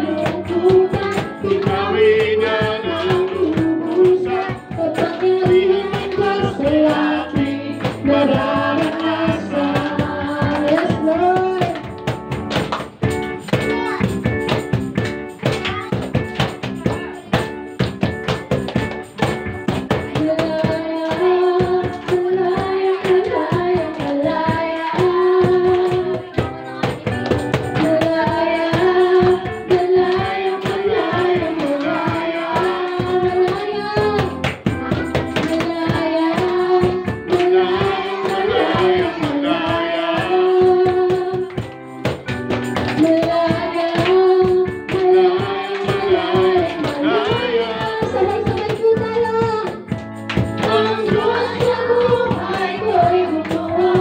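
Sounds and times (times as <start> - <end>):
person singing melody: 0.0 - 11.8, 20.2 - 41.6, 43.0 - 49.8
percussion beat: 0.0 - 54.0
worship band music: 0.0 - 54.0.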